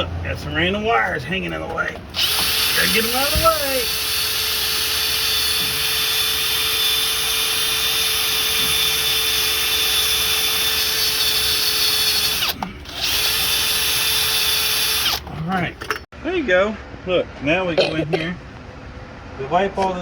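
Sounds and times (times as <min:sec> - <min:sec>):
motor whirring: 0:02.1 - 0:15.3.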